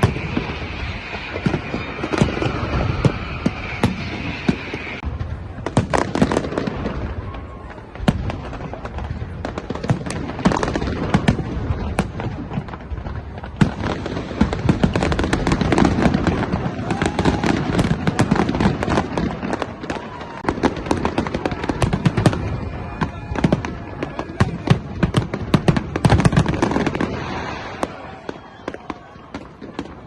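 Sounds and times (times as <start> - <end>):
fireworks bursting and crackling: 0.0 - 30.0.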